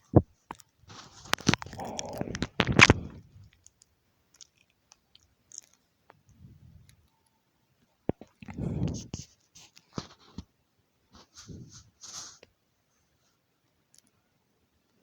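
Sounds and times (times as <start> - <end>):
rustling crunching scrape: 0.9 - 3.4, 11.2 - 12.4.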